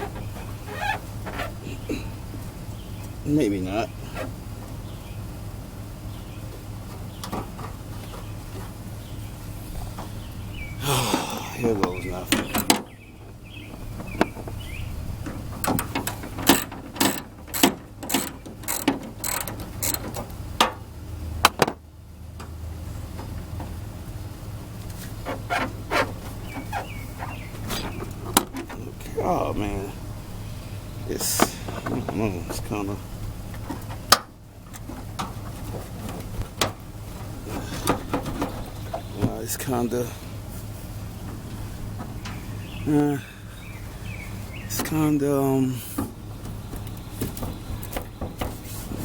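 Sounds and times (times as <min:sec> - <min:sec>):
steady low hum: 0:00.0 - 0:23.0
ratchet wrench clicking: 0:16.5 - 0:20.2.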